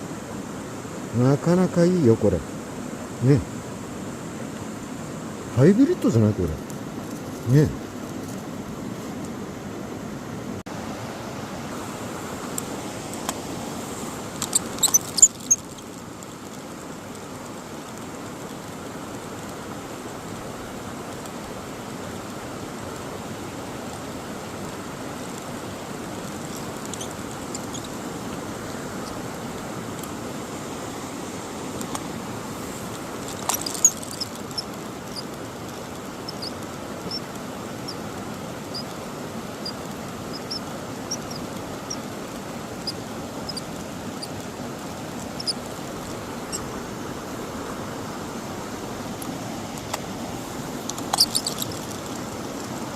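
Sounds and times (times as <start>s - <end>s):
stream water rushing: 0.0s - 52.9s
faint high chirps: 14.5s - 15.8s, 33.4s - 35.2s, 51.1s - 51.8s
sharp clicks: 33.2s - 35.4s, 50.8s - 52.2s.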